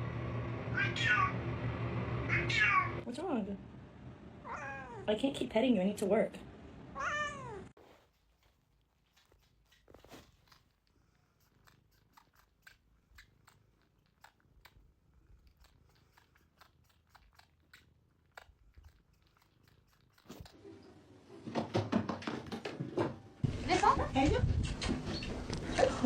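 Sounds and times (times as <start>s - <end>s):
animal chewing: 7.8s - 20.6s.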